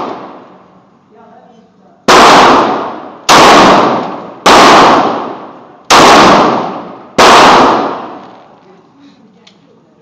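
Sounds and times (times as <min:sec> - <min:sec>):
pistol shots echoing indoors: 0:02.1 - 0:08.4.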